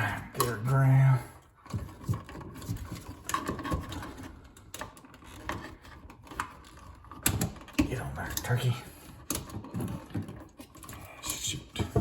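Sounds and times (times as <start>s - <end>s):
wire clicking and scraping on screw: 1.6s - 11.6s.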